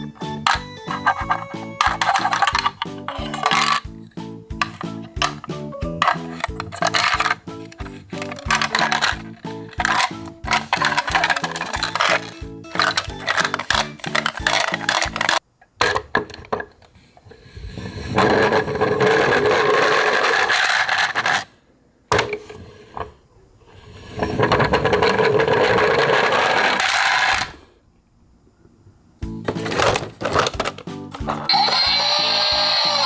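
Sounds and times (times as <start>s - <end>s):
clattering: 0.4s - 4.0s, 4.6s - 16.8s, 29.5s - 31.5s.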